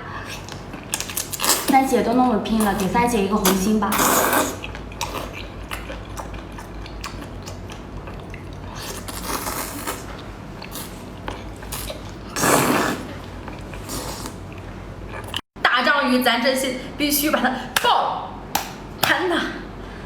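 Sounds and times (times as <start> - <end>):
person chewing noodles: 0.1 - 1.7, 2.6 - 15.4.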